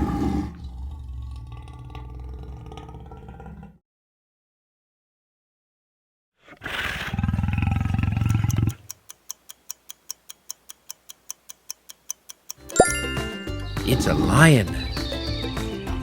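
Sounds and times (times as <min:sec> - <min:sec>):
lion roaring: 0:00.0 - 0:03.8, 0:06.4 - 0:08.8
clock ticking quickly: 0:08.2 - 0:12.8.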